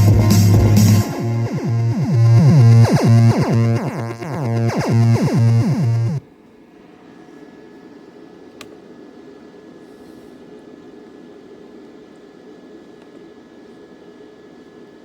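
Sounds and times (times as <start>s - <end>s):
deep bass note: 0.0s - 6.2s
falling synth sweeps: 0.0s - 6.2s.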